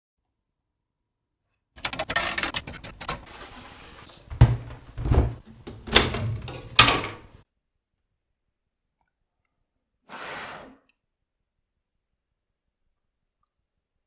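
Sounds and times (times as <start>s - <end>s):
rapid clatter of clicks and rattles: 1.8s - 3.3s.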